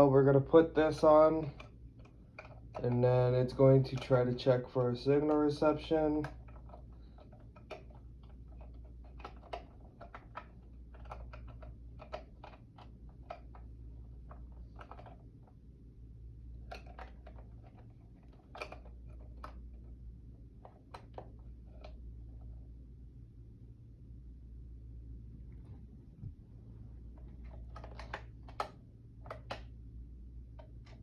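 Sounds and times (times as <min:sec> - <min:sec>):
faint low hum: 0:00.0 - 0:31.0
plastic clicks and taps: 0:16.7 - 0:19.6, 0:27.2 - 0:29.7.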